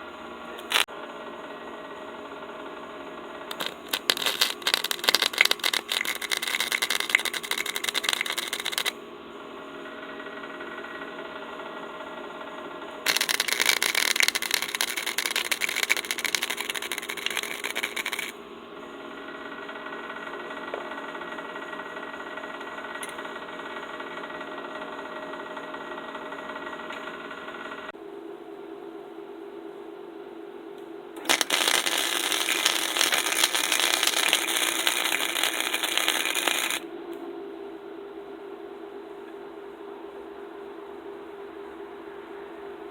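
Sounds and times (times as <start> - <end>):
steady background hum: 0.0 - 42.9
welder crackling and sizzling: 0.5 - 0.9, 3.5 - 9.0, 13.1 - 18.4, 31.2 - 36.8.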